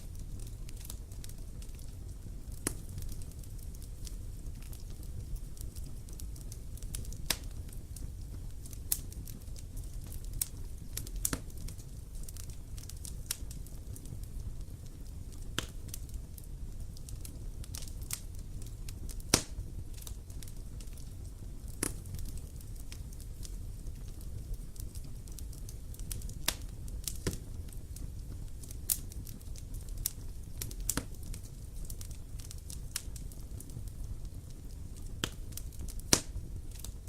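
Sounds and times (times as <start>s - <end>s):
burning wood popping and crackling: 0.0s - 37.0s
low rumble of flames: 0.0s - 37.0s.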